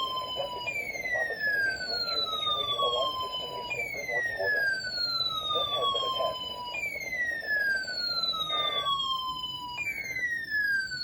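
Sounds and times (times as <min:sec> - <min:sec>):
electronic siren tone sweeping down: 0:00.0 - 0:11.0.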